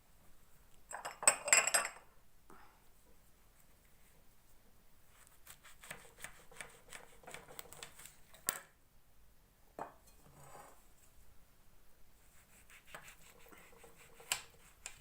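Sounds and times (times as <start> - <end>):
knife cutting fruit: 5.2 - 8.2, 12.4 - 15.0.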